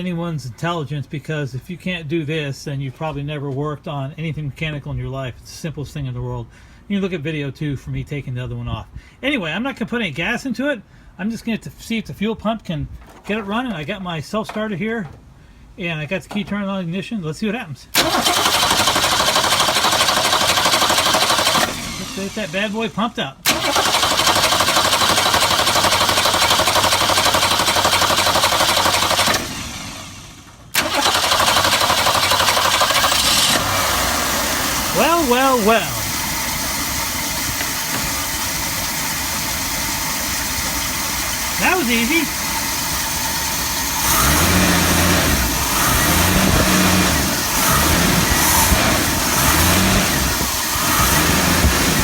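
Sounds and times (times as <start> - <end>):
engine cranking on starter: 17.9 - 52.0
engine running steadily: 18.0 - 22.7, 23.4 - 52.0.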